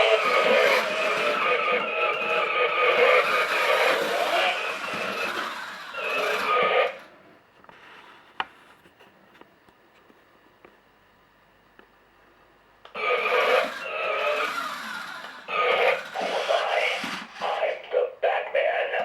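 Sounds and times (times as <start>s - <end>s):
electronic toy vehicle sound: 0.0s - 7.2s, 12.9s - 18.0s.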